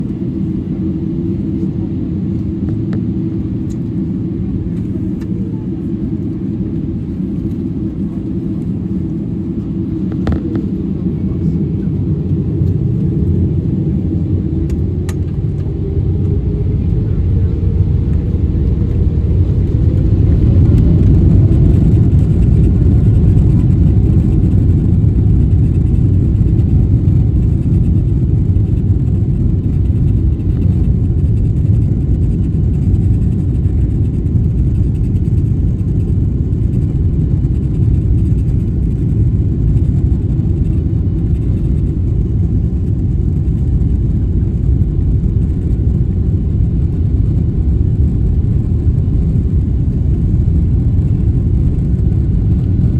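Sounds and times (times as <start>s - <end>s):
jet engines deep rumble: 0.0s - 52.9s.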